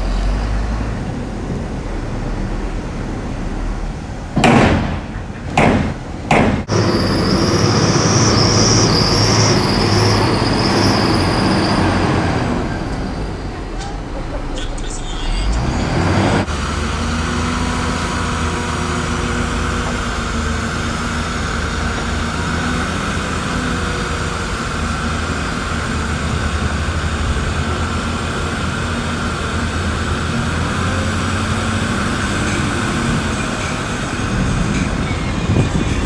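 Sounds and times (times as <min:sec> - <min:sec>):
heavy diesel machinery drone: 0:00.0 - 0:36.0
high machinery whine: 0:06.6 - 0:13.4.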